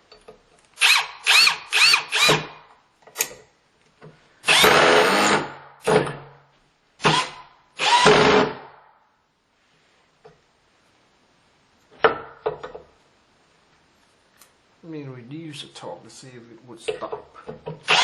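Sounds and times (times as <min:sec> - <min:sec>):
power drill motor whine: 0:07.0 - 0:08.6.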